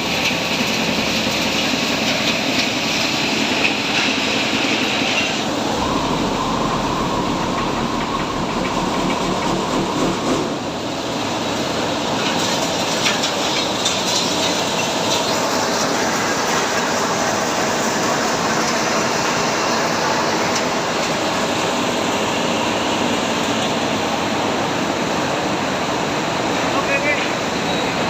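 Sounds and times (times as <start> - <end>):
thin whine: 5.3 - 11.0.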